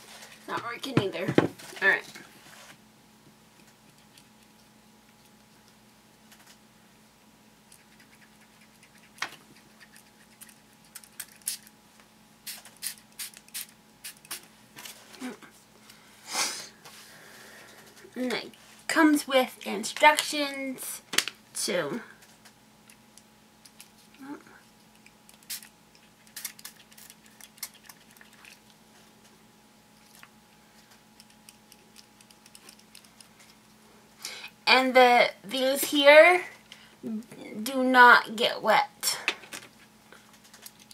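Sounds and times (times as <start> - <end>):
faint steady hum: 0.0 - 40.9.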